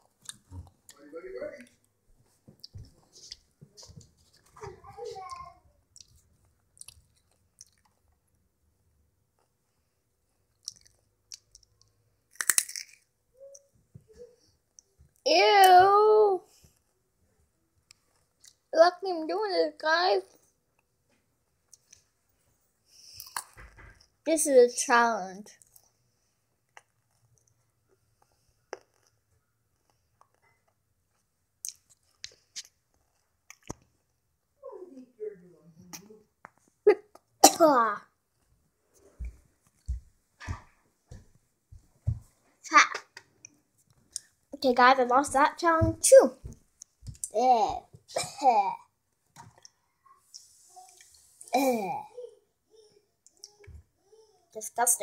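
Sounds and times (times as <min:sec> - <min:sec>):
person chewing crunchy food: 0:06.8 - 0:08.1, 0:10.5 - 0:13.0, 0:28.6 - 0:29.2.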